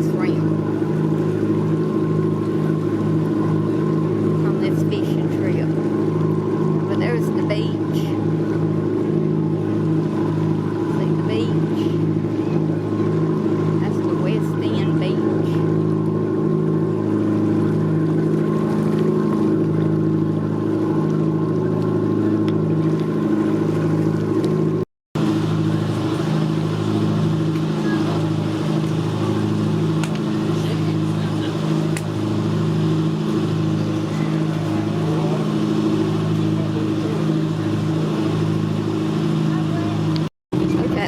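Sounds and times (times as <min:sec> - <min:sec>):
boat engine running: 0:00.0 - 0:41.0.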